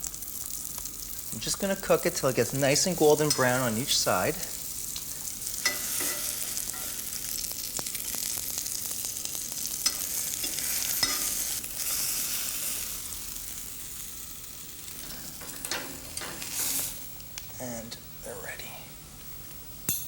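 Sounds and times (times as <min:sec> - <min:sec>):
food sizzling in oil: 0:00.0 - 0:17.2.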